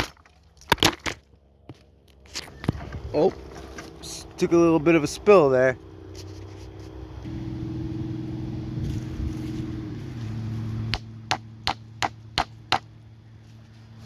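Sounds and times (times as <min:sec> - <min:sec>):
engine hum: 0:00.0 - 0:14.0
chopping strikes on wood: 0:10.9 - 0:12.9.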